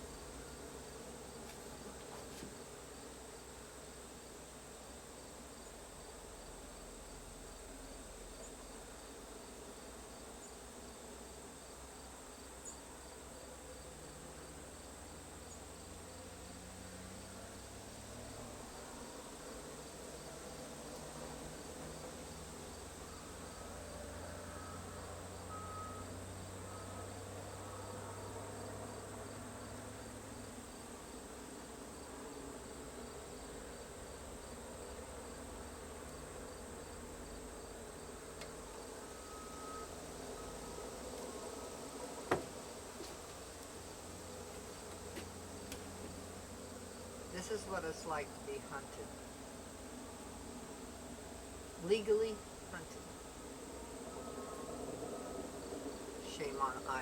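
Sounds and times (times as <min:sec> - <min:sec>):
insects chirping: 0:00.0 - 0:57.0
low steady hum: 0:34.1 - 0:57.0.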